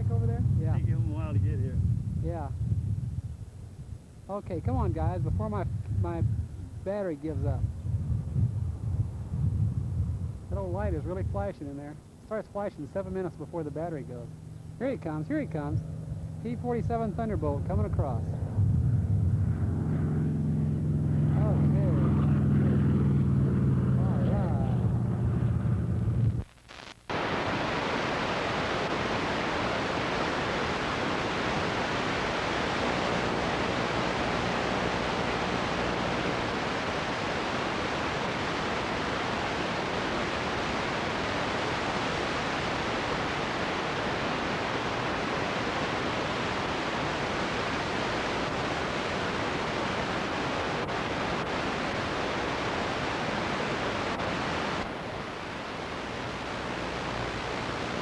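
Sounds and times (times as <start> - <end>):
static hiss: 0.0 - 2.6, 10.3 - 18.2, 25.0 - 58.0.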